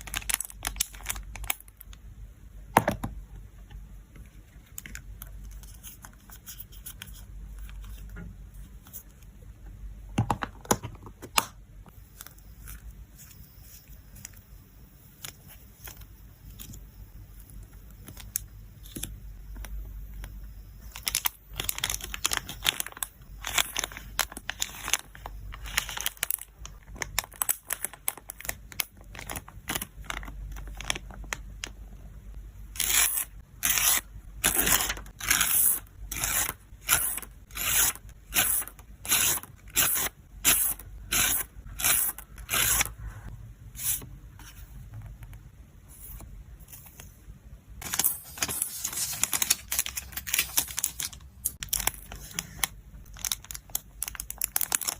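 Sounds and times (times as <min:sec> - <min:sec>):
plastic packaging crinkling: 0:00.0 - 0:01.9, 0:20.9 - 0:31.8, 0:47.8 - 0:54.9
handling photocards: 0:47.8 - 0:54.9.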